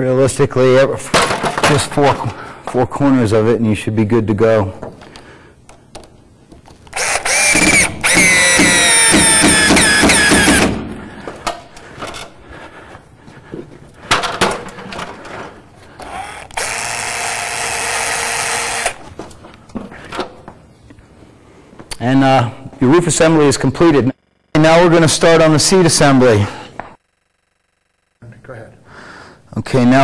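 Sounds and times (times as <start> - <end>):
power drill driving screws: 6.9 - 10.8, 16.0 - 19.0.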